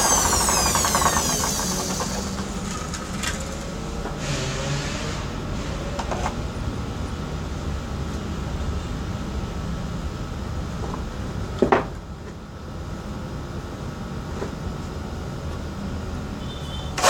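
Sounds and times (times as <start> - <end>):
electric drill winding down: 0.0 - 3.6.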